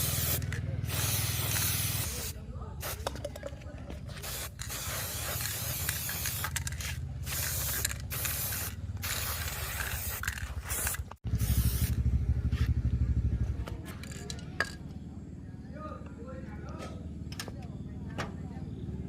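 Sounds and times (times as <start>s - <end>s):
spray hissing: 0.0s - 3.2s, 4.0s - 12.2s.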